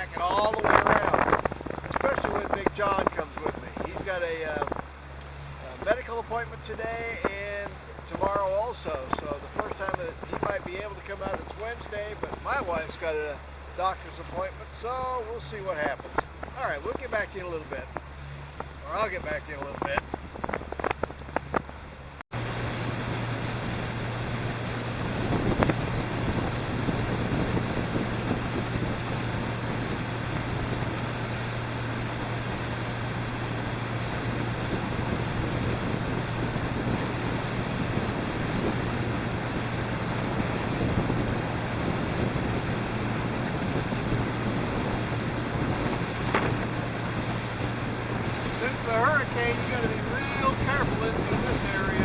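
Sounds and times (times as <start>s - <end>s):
small boat motor running: 0.0s - 52.0s
water noise: 0.0s - 52.0s
wind on microphone: 0.0s - 52.0s.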